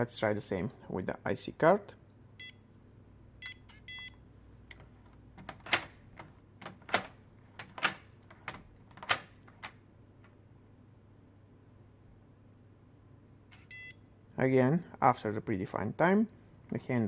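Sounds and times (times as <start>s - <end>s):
electronic door lock beeps: 2.4s - 2.6s, 3.4s - 4.2s, 13.6s - 14.0s
door handle clicks: 5.4s - 9.8s.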